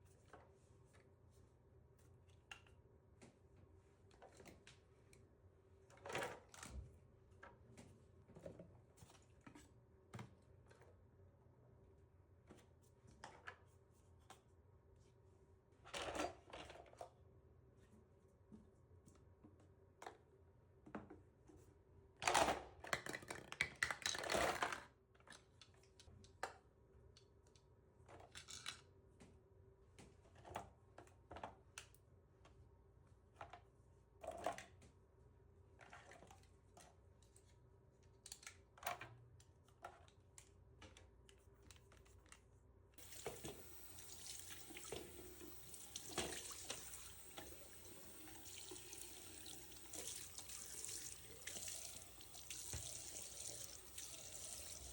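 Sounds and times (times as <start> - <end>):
tap water running into sink: 43.0 - 54.9.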